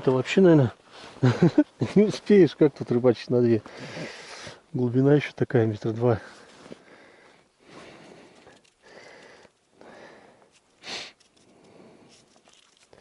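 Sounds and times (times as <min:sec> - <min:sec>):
person breathing: 0:03.6 - 0:04.7, 0:06.3 - 0:12.2
sharp sniff: 0:10.8 - 0:12.3.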